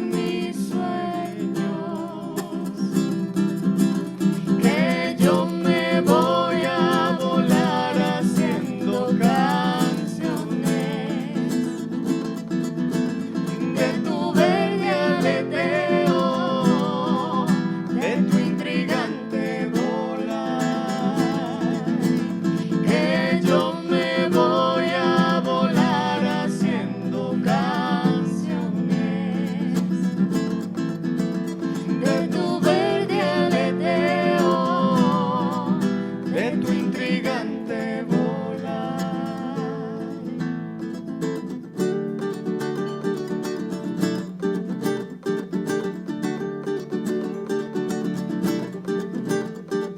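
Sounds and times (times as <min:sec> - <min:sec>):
person singing with vibrato: 0:00.0 - 0:12.3, 0:13.3 - 0:30.7, 0:31.6 - 0:40.7
acoustic guitar strumming: 0:00.0 - 0:49.9.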